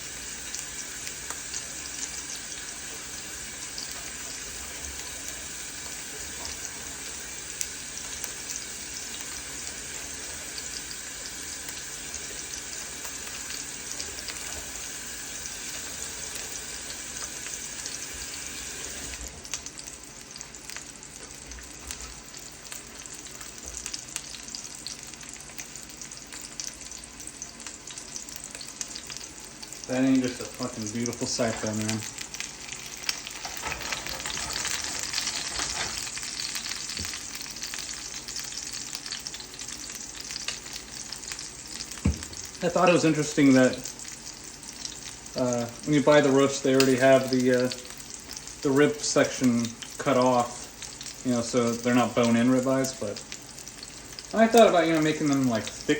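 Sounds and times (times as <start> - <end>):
kitchen tap running: 0.0 - 20.6, 21.2 - 55.9
steaks sizzling in a pan: 0.0 - 55.9.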